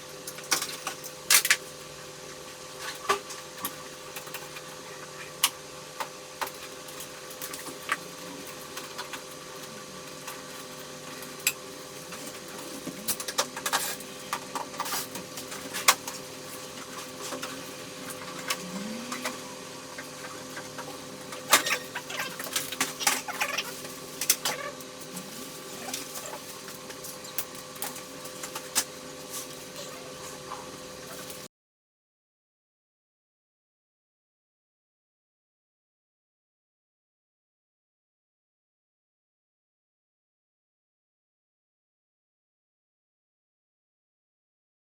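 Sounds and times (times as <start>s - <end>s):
steady electrical hum: 0.0s - 31.5s.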